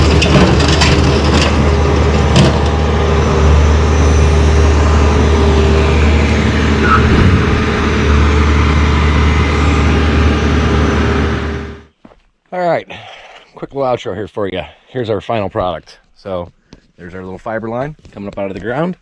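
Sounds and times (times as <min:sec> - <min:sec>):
engine running with low hum: 0:00.0 - 0:11.9.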